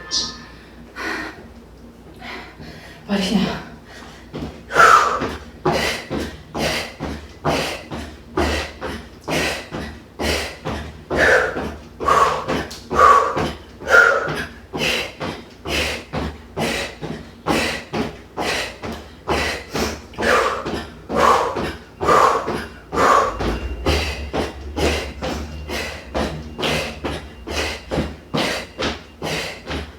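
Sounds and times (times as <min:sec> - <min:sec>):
woman breathing hard: 0:00.5 - 0:01.5, 0:02.2 - 0:03.1, 0:03.8 - 0:29.9.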